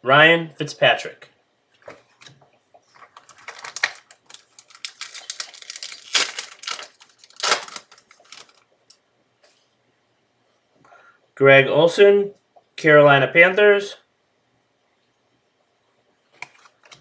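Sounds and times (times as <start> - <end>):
cards rustling and clicking: 1.8 - 8.6.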